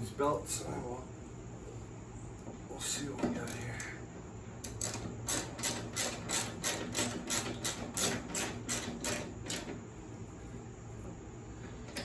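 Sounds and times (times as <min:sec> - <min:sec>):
ratchet wrench clicking: 0:04.6 - 0:09.7.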